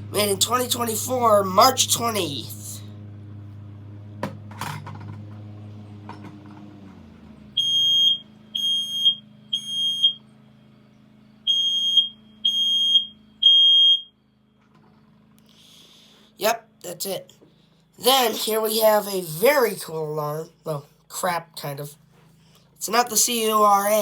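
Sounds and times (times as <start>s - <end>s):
piercing alarm beeps: 7.6s - 10.2s, 11.4s - 14.2s.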